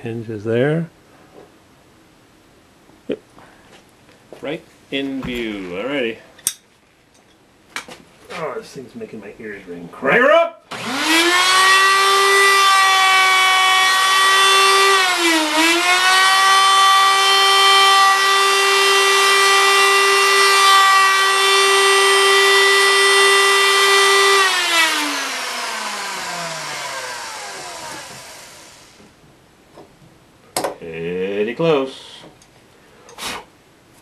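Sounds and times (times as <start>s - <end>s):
electric router whining: 10.7s - 29.1s.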